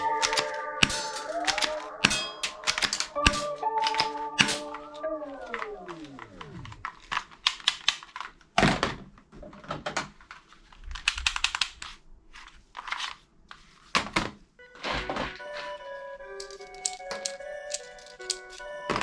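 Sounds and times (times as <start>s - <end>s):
toy guns clicking and clacking: 0.0s - 4.9s, 5.5s - 8.4s, 11.0s - 12.0s, 16.4s - 19.0s
falling tone: 0.0s - 7.1s.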